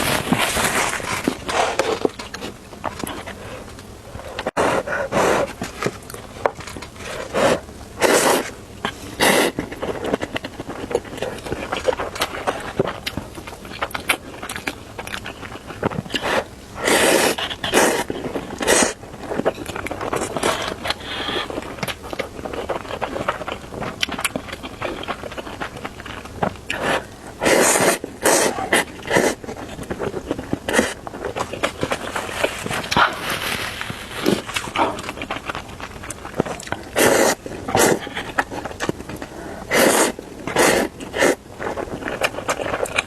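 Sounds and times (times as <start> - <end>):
wet chewing and smacking: 5.4 - 43.0
noodles being slurped: 26.7 - 43.0.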